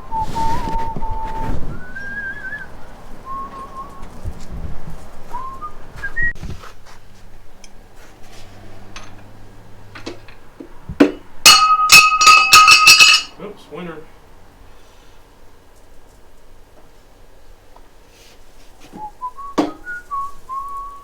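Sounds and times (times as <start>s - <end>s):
person whistling: 0.0s - 4.1s, 5.3s - 6.4s, 18.9s - 21.0s
light clicks of parts: 7.6s - 7.8s
ringing metallic clink: 11.5s - 13.4s.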